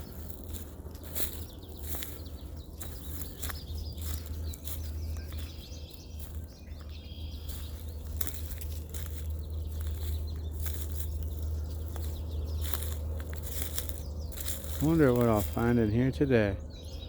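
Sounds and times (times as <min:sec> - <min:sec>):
footsteps: 0:00.0 - 0:15.9
bird chirping: 0:00.0 - 0:17.0.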